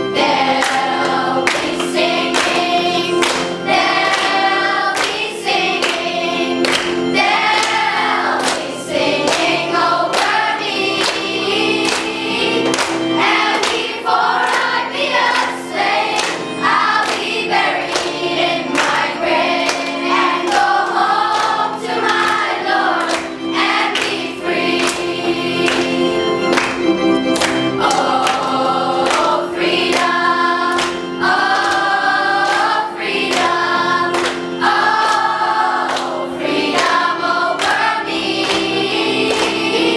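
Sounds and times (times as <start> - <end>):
choir singing: 0.0 - 39.9
instrumental accompaniment with beat: 0.0 - 39.9.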